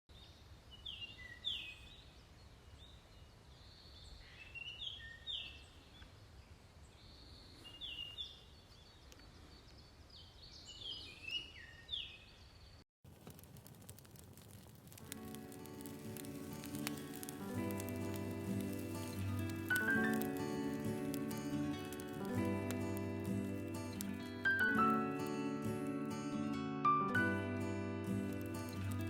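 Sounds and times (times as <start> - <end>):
small birds chirping: 0.1 - 12.8, 15.2 - 26.3, 28.0 - 29.0
dense fine crackling: 13.0 - 29.0.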